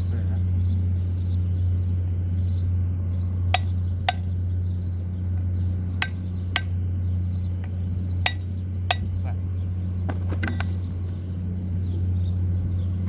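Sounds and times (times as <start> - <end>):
low mechanical hum: 0.0 - 13.0
hand tools tapping metal: 3.6 - 4.3, 6.0 - 6.8, 8.3 - 9.2, 10.4 - 10.9.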